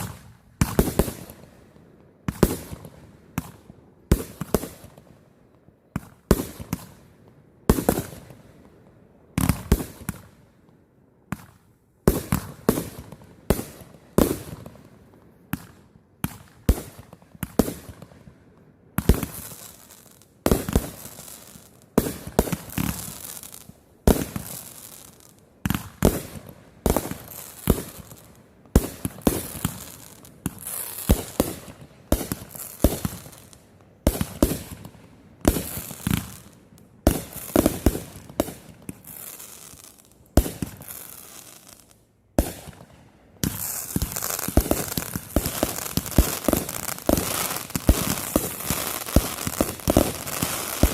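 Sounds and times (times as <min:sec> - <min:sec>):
fireworks crackling: 0:19.0 - 0:50.9
fireworks bangs: 0:25.6 - 0:50.9.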